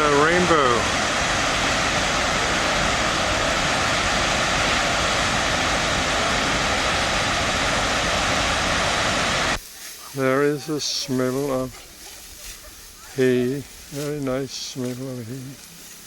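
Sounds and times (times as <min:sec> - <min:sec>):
waterfall rushing: 0:00.0 - 0:11.7.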